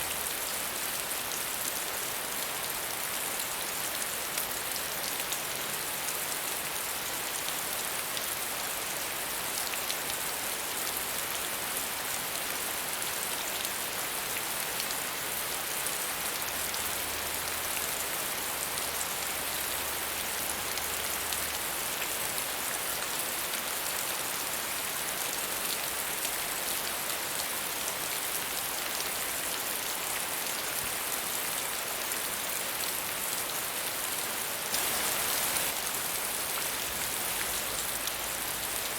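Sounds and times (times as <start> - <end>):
steady rain: 0.0 - 38.9
raindrops pattering: 34.7 - 38.9.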